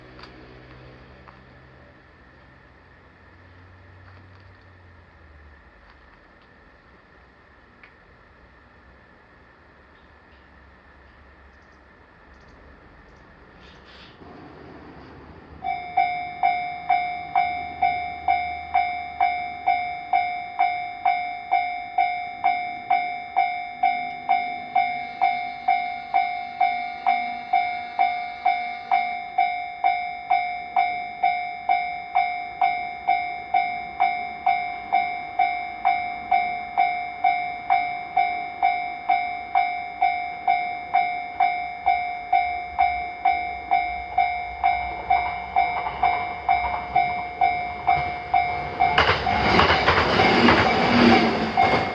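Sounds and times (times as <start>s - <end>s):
level crossing bell clanging: 15.6s - 51.9s.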